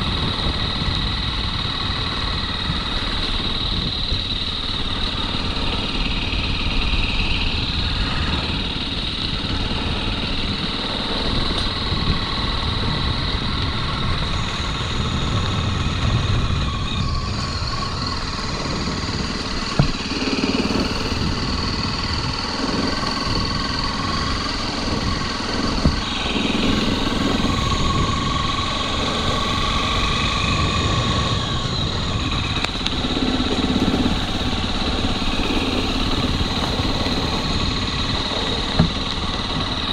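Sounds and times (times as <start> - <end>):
motorcycle engine running: 0.0 - 39.9
road and wind noise: 0.0 - 39.9
sharp knocks: 19.7 - 20.0.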